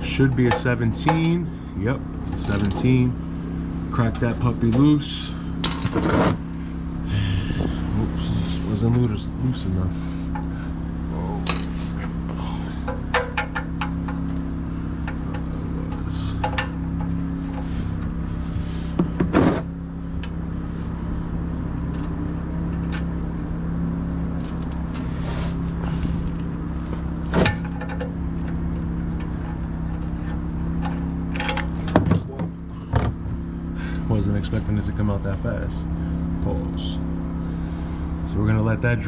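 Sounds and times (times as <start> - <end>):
steady low hum: 0.0 - 39.0
wrench clicks and metal knocks: 2.3 - 2.9.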